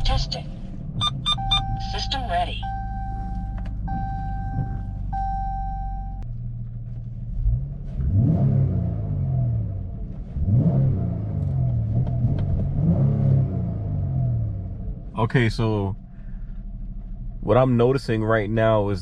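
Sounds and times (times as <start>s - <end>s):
car engine revving: 0.0s - 19.0s
steady beep: 1.0s - 6.2s.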